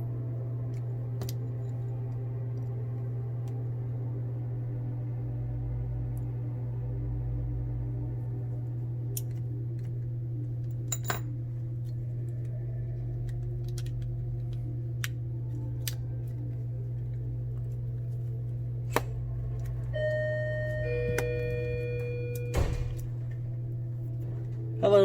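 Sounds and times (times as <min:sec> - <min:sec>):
steady low hum: 0:00.0 - 0:25.0
two-note door chime: 0:19.9 - 0:23.1.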